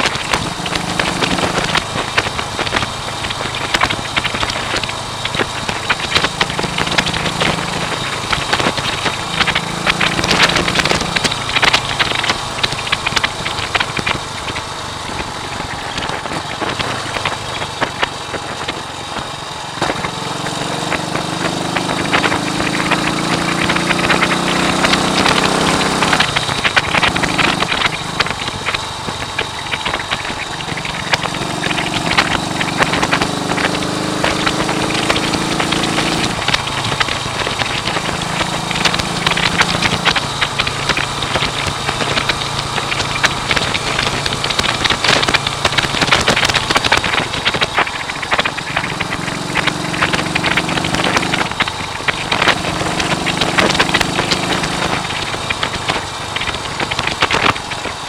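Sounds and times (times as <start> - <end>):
motorcycle engine running: 0.0 - 58.0
wind noise buffeting: 0.0 - 58.0.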